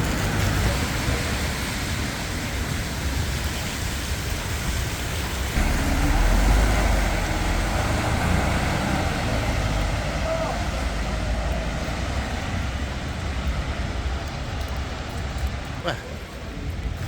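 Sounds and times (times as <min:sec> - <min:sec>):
rain on a wet street: 0:00.0 - 0:17.0
low rumble: 0:05.6 - 0:17.0.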